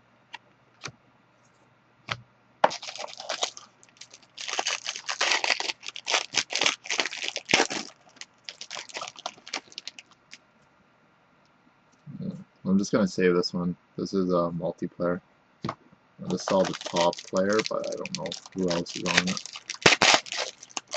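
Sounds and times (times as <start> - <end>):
packaging crinkling and tearing: 2.6 - 10.4, 16.3 - 20.9.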